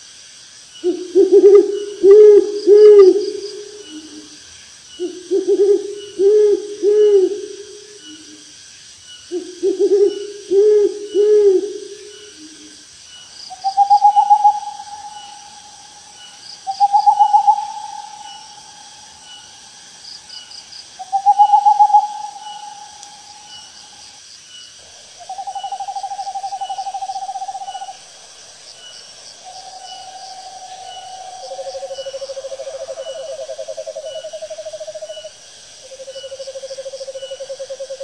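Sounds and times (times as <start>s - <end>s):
owl hooting: 0.8s - 4.3s, 5.0s - 8.4s, 9.3s - 12.6s, 13.5s - 19.5s, 21.0s - 23.7s, 25.2s - 28.2s.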